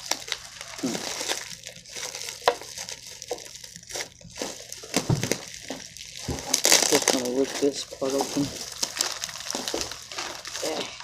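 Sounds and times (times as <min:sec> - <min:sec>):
packaging crinkling: 0:00.0 - 0:11.0.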